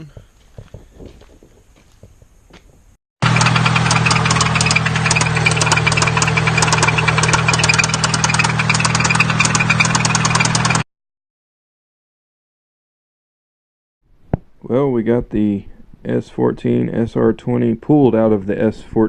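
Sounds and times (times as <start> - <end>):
car engine idling with ticking knock: 3.2 - 10.8.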